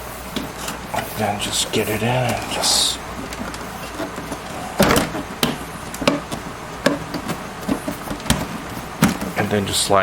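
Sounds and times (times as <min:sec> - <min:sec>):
computer case panel clunking: 0:00.4 - 0:09.7.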